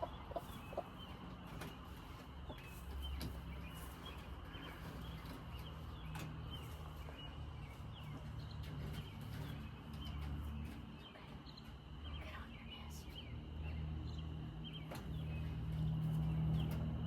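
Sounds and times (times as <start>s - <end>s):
chickens chirping and calling: 0.0s - 12.0s
steady low hum: 0.0s - 17.0s.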